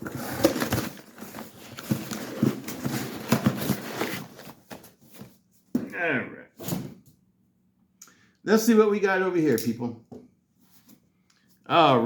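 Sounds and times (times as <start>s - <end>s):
cardboard and paper rustling: 0.0s - 5.6s.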